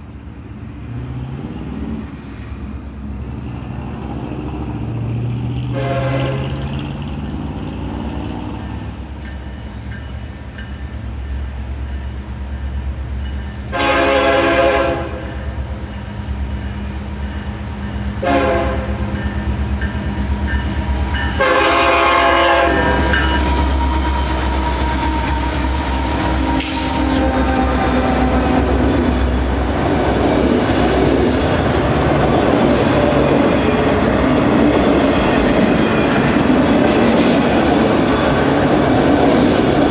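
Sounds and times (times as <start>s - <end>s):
locomotive engine drone: 0.0s - 39.9s
train wheels clattering on rail: 0.0s - 39.9s
train horn blowing: 5.7s - 6.7s, 13.7s - 15.4s, 18.2s - 19.2s, 21.2s - 28.9s.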